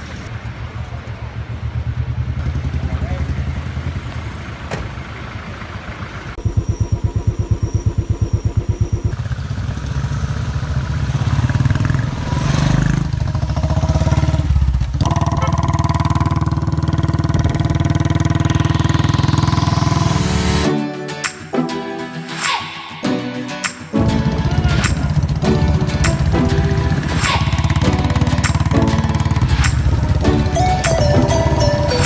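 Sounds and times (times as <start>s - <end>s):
motorcycle engine thumping: 4.1s - 5.3s, 6.4s - 20.0s, 27.7s - 32.0s.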